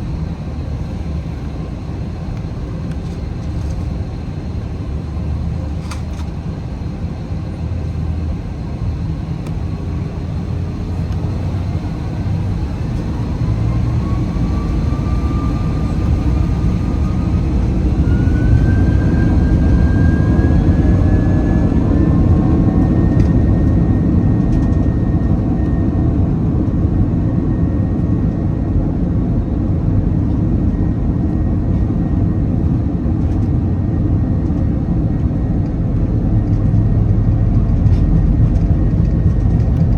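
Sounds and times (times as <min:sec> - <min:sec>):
jet engine whine: 0:00.0 - 0:39.9
low engine rumble: 0:00.0 - 0:39.9.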